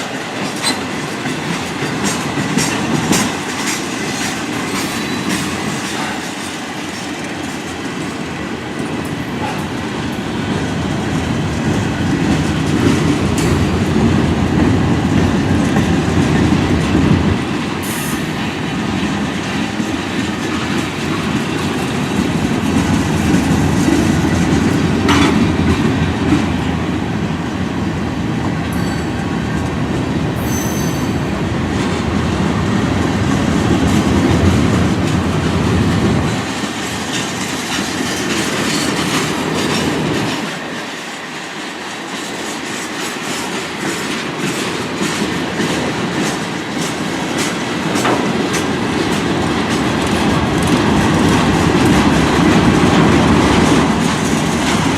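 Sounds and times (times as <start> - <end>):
train wheels clacking on rail joints: 0.0 - 27.1, 32.9 - 54.9
high wheel squeal: 30.4 - 31.2.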